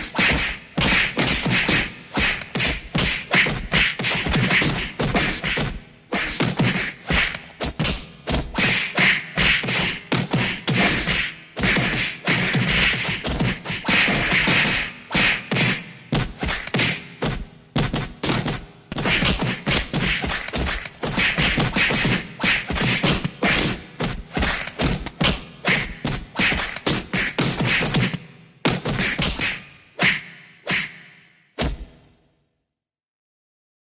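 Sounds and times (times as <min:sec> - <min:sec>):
punches and body hits: 0:00.0 - 0:30.9.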